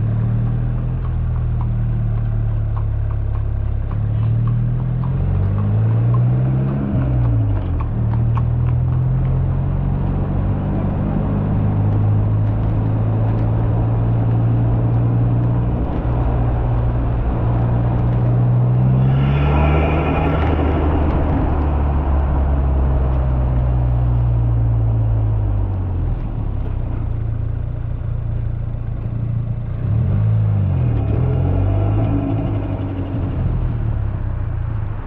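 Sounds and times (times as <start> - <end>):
car engine revving: 0.0 - 35.0.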